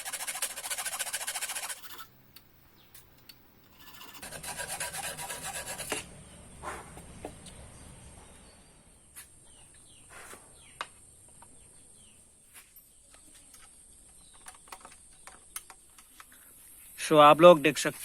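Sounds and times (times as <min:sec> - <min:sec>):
birds chirping faintly: 0:00.2 - 0:18.0
small tools clicking and knocking: 0:13.1 - 0:16.4.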